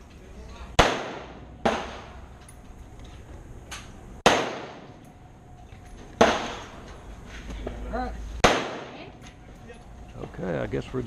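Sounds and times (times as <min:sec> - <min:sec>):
sharp gunshots with echo: 0:00.8 - 0:02.2, 0:04.2 - 0:05.0, 0:06.2 - 0:06.7, 0:08.4 - 0:09.1
distant fainter gunshots: 0:00.8 - 0:02.3, 0:04.2 - 0:05.0, 0:06.2 - 0:06.8, 0:08.4 - 0:09.1.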